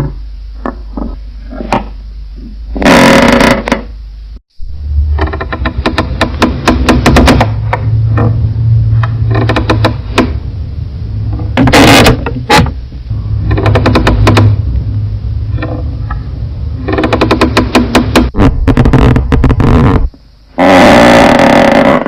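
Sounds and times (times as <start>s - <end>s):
wooden floorboards creaking: 2.8s - 3.9s, 5.1s - 8.4s, 9.0s - 10.4s, 11.3s - 12.8s, 13.4s - 14.6s, 16.8s - 22.0s
heavy boosted bass: 4.5s - 20.2s.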